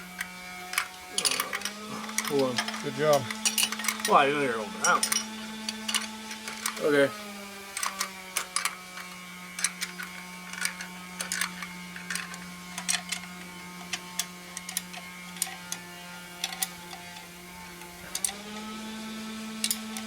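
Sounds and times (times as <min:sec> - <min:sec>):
steady low hum: 0:00.0 - 0:15.6
hand tools clinking on metal: 0:00.1 - 0:07.1, 0:07.7 - 0:18.7, 0:19.6 - 0:20.0.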